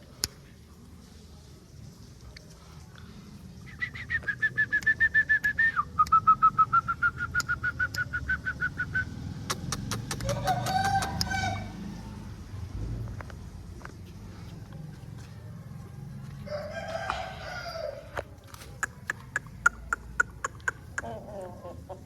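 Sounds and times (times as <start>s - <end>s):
sharp clicks: 9.5s - 10.3s
rooster crowing: 10.2s - 12.3s, 16.3s - 18.3s.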